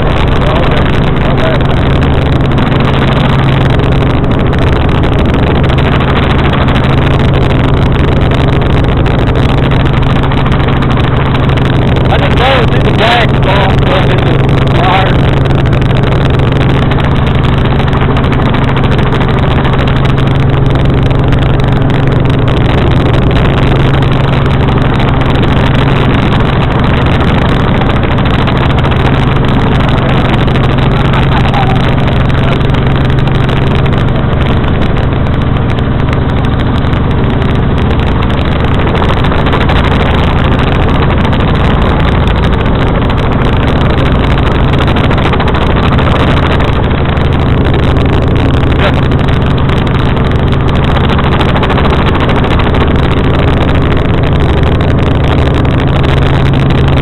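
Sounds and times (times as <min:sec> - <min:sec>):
helicopter drone: 0:00.0 - 0:57.0.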